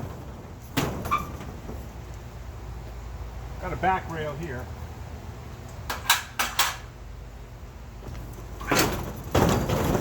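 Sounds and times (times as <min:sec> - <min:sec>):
sharp knocks on metal latch: 0:05.9 - 0:06.9.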